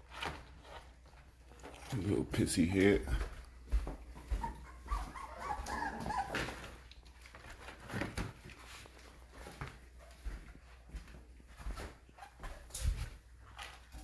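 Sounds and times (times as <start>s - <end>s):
light knocks and shuffling: 0.0s - 14.0s
puppies whimpering: 4.2s - 6.9s.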